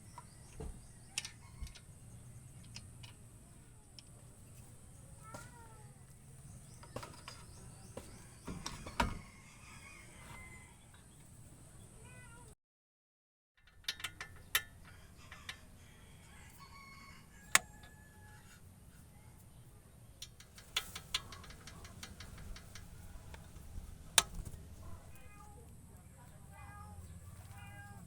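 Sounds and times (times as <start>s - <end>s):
metallic clicks of hand tools: 13.6s - 15.6s, 20.2s - 23.6s.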